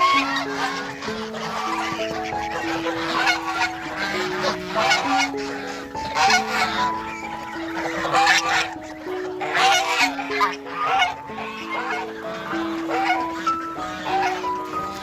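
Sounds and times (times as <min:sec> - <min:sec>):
geese honking: 0:00.0 - 0:15.0
music with slow held notes: 0:00.0 - 0:15.0.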